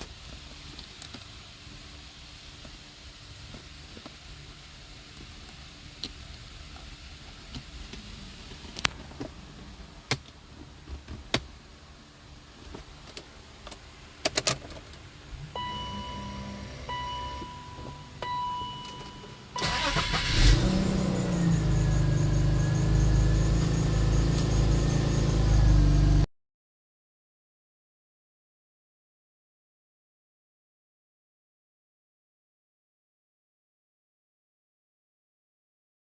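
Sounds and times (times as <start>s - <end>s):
car engine cranking and idling: 0.0s - 26.3s
electronic warning chime beeping: 15.5s - 26.2s.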